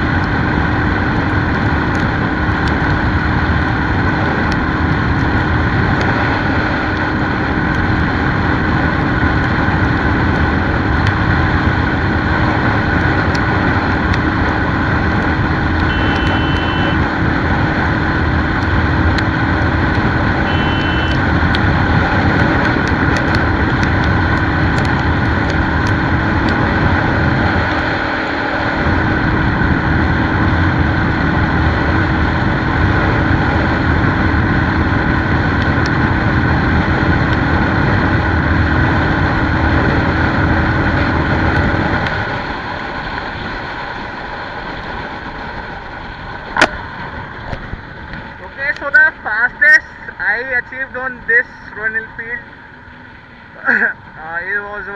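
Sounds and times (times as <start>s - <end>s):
motorcycle engine running hard: 0.0s - 48.5s
wind and road noise: 0.0s - 54.9s
short high beep: 15.9s - 17.0s, 20.5s - 21.2s.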